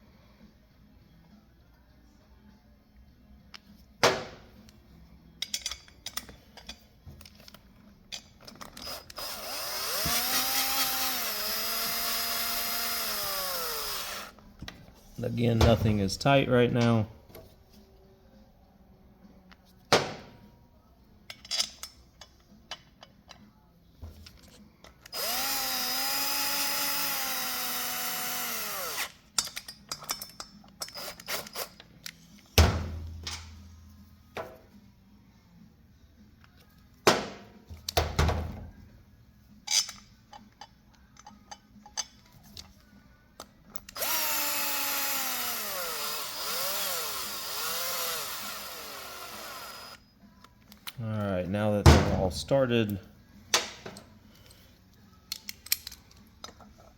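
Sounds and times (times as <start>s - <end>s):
metallic clicks and knocks of tools: 5.4s - 9.2s, 21.3s - 23.5s, 29.3s - 32.5s, 39.6s - 42.8s, 55.2s - 56.9s
cordless drill driving bolts: 8.6s - 14.3s, 25.0s - 29.2s, 43.9s - 50.0s.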